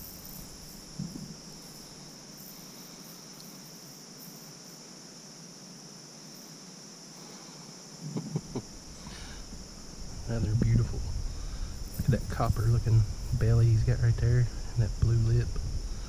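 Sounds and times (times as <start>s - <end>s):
crickets chirping: 0.0s - 16.0s.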